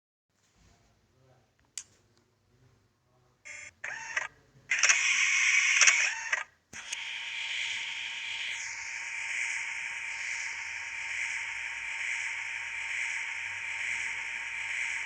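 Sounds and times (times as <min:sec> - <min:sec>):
faint steady whine: 0:03.5 - 0:15.0
machining centre hiss: 0:06.8 - 0:15.0.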